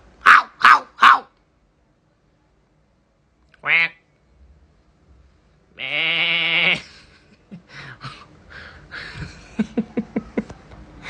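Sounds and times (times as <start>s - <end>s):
bleat-like animal call: 5.8s - 6.8s.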